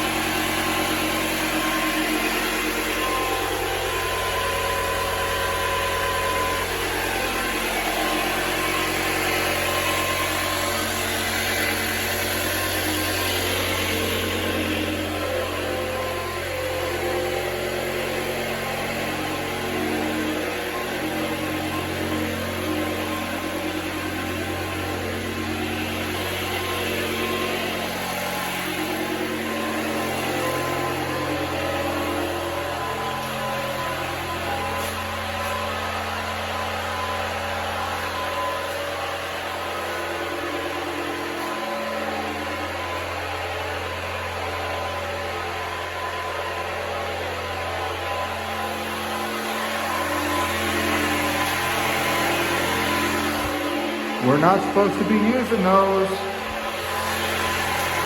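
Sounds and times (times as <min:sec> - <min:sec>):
construction machinery engine running: 0:00.0 - 0:58.0.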